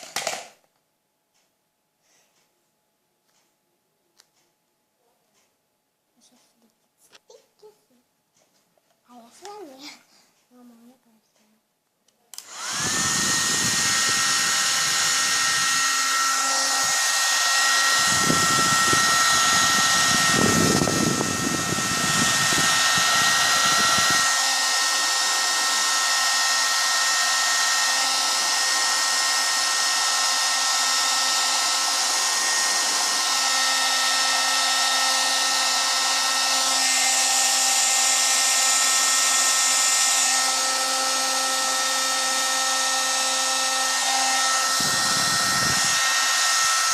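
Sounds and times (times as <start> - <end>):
hair dryer running: 0.0 - 0.6, 12.3 - 46.9.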